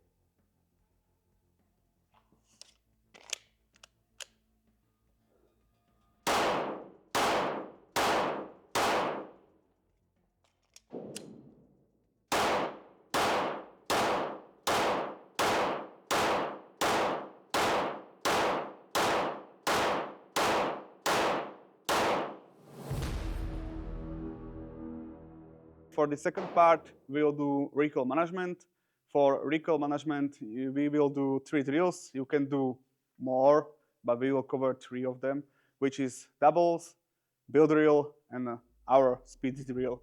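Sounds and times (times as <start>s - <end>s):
pistol shots echoing: 6.3s - 9.4s, 12.3s - 22.5s, 26.4s - 26.8s.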